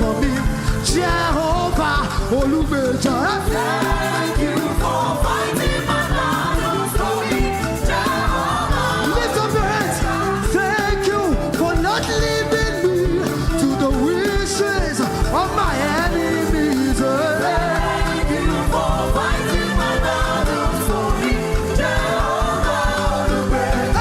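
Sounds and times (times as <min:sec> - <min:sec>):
band playing: 0:00.0 - 0:24.0
bass: 0:00.0 - 0:24.0
drum beat: 0:00.0 - 0:24.0
person singing gospel: 0:00.0 - 0:24.0.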